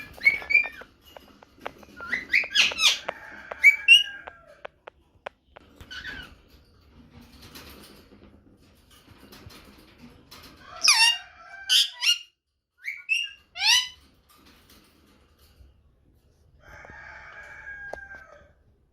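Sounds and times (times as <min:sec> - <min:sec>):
parakeet screeching: 0:00.0 - 0:00.8, 0:02.0 - 0:04.3.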